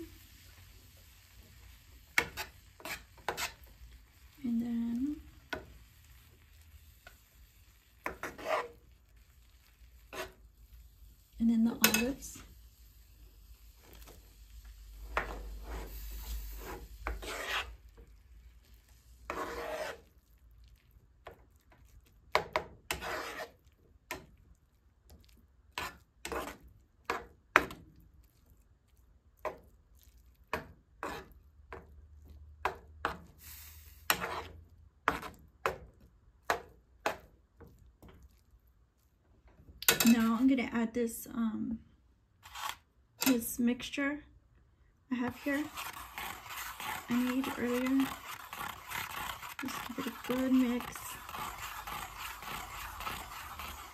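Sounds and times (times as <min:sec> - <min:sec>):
utensil scraping a pan: 0:01.1 - 0:04.2, 0:07.0 - 0:10.8, 0:11.5 - 0:12.5, 0:14.8 - 0:18.2, 0:18.8 - 0:20.2, 0:22.3 - 0:24.3, 0:25.7 - 0:27.8, 0:30.5 - 0:31.9, 0:32.6 - 0:35.8, 0:39.8 - 0:40.6, 0:42.4 - 0:43.6, 0:45.1 - 0:53.9.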